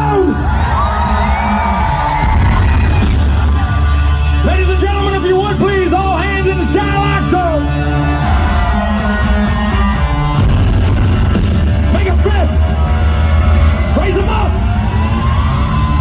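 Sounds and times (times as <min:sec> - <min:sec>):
hard rock band playing: 0:00.0 - 0:16.0.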